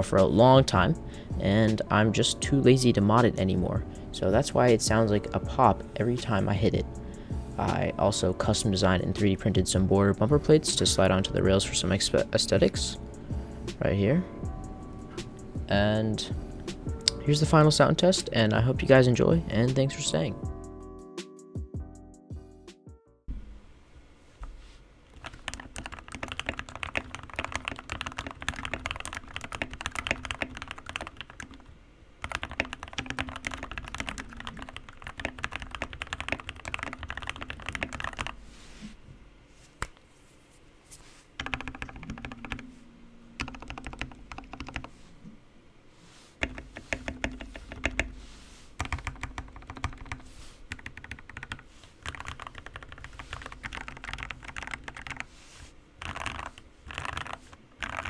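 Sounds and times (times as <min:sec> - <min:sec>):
mechanical keyboard typing: 0:25.2 - 0:38.4, 0:41.4 - 0:42.6, 0:43.4 - 0:44.9, 0:46.4 - 0:48.1, 0:48.8 - 0:55.3, 0:56.0 - 0:58.0.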